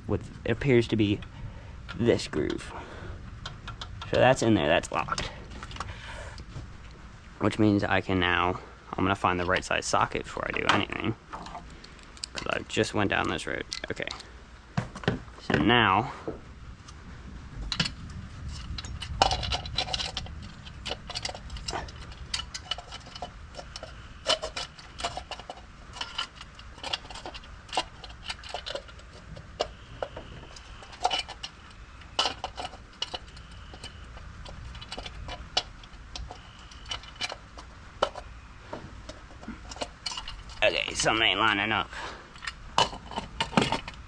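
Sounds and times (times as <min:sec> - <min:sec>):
low steady rumble: 0:00.0 - 0:44.0
hands handling tools clinking: 0:17.6 - 0:44.0.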